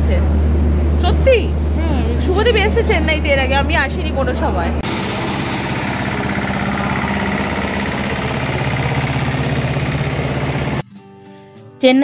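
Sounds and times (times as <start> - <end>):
locomotive engine throbbing: 4.7 - 10.8.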